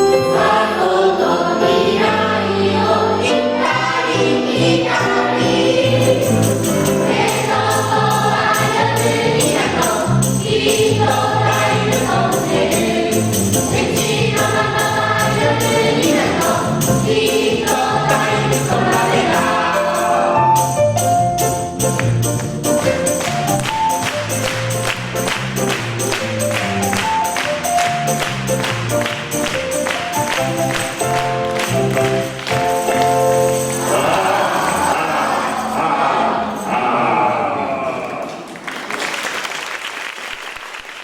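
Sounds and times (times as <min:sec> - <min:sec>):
children's choir singing: 0:00.0 - 0:20.6, 0:25.4 - 0:38.7
musical accompaniment: 0:00.0 - 0:37.0
jingling percussion beat: 0:05.5 - 0:37.1.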